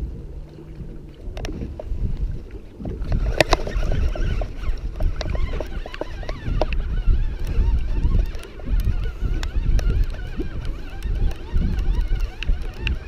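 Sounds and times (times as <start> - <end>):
water noise: 0.0 - 13.0
wind on microphone: 0.0 - 13.0
clicks and knocks of boat gear: 1.3 - 1.9, 2.8 - 6.8.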